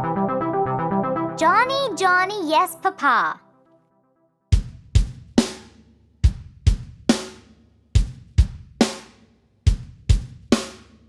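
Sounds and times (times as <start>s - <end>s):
bass drum thumps: 4.6s - 5.4s, 6.2s - 7.0s, 8.0s - 8.8s, 9.7s - 10.4s.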